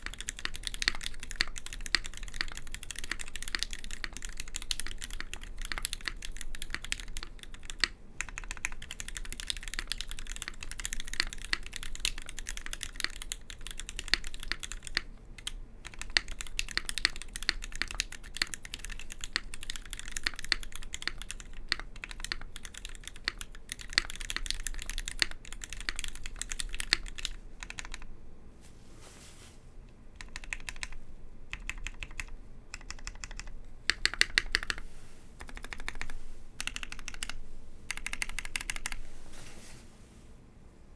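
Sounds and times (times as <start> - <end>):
mechanical keyboard typing: 0.0 - 28.1, 30.2 - 39.1.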